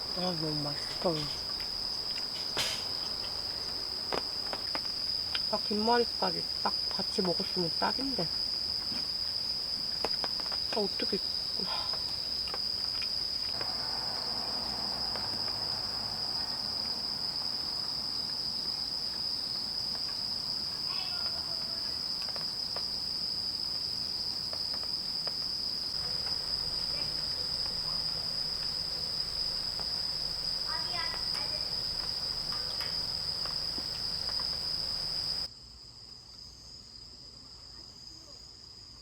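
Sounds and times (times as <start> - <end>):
crickets chirring: 0.0 - 39.0
faint clicks and knocks: 24.5 - 35.5.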